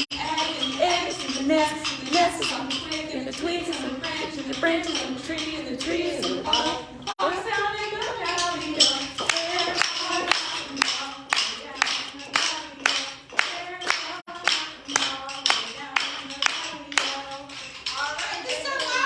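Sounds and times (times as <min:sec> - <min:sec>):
person singing a children's song: 0:00.2 - 0:19.0
hand clapping in a steady beat: 0:09.1 - 0:17.8.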